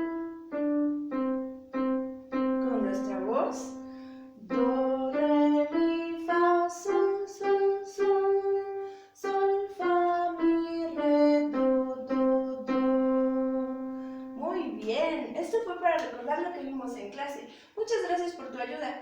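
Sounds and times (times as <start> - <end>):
held notes in a scale: 0.0 - 14.8.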